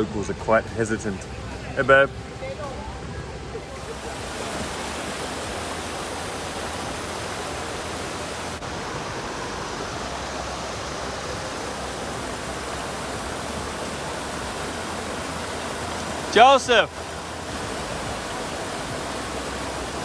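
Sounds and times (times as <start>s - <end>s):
waterfall rushing: 3.6s - 20.0s.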